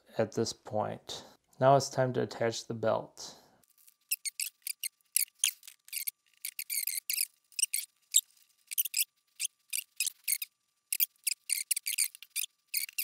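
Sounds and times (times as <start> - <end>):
timing belt rubbing squeaks: 4.0 - 13.0.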